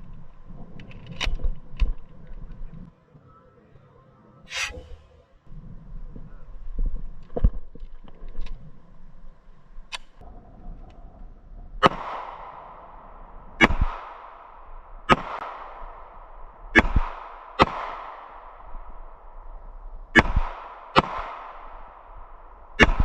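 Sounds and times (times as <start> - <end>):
gunshots with echo: 11.8 - 19.4, 20.2 - 23.0.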